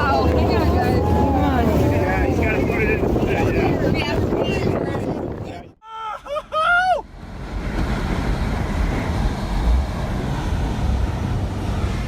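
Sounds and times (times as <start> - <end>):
heavy low rumble: 0.0 - 5.8, 7.1 - 12.0
rough water rushing: 0.0 - 5.8, 7.0 - 12.0
strong wind: 0.0 - 5.8, 6.7 - 12.0
wind buffeting microphone: 0.0 - 5.8.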